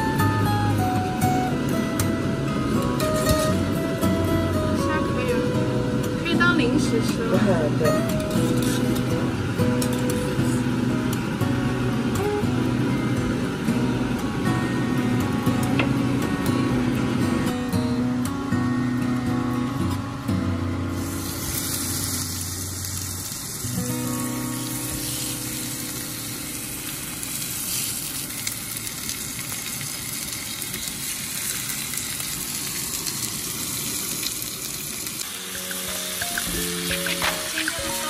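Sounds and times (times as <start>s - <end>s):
background music: 0.0s - 23.0s, 35.3s - 38.0s
food sizzling in a pan: 5.4s - 17.4s, 20.8s - 38.0s.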